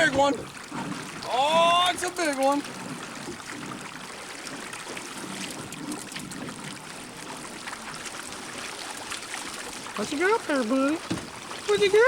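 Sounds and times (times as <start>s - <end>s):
river water rushing: 0.0s - 12.0s
small ticks and splashes: 0.0s - 12.0s.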